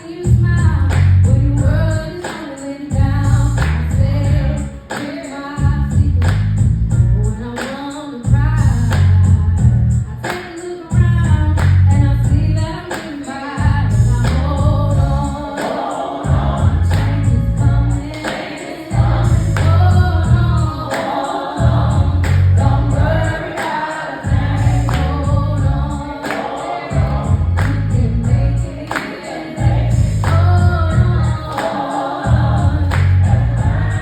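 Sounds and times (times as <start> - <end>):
heavy bass beat: 0.3 - 2.1, 2.9 - 4.7, 5.6 - 7.3, 8.3 - 10.1, 10.9 - 12.8, 13.6 - 15.5, 16.2 - 18.2, 18.9 - 21.0, 21.6 - 23.6, 24.2 - 26.2, 26.9 - 28.8, 29.6 - 31.5, 32.2 - 34.0
choir singing: 14.9 - 34.0.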